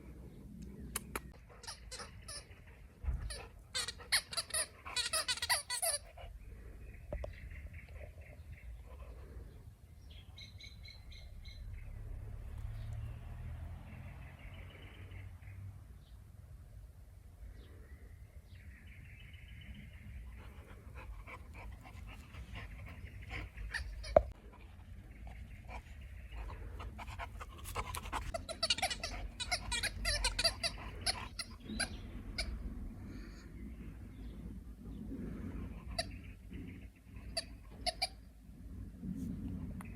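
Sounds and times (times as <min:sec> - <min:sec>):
dog chewing squeaky ball: 0:01.6 - 0:02.5, 0:03.1 - 0:06.1, 0:23.4 - 0:24.4, 0:27.6 - 0:32.6, 0:37.4 - 0:38.2
rubber ball squeaking: 0:28.3 - 0:32.5
steady low rumble: 0:29.1 - 0:39.9.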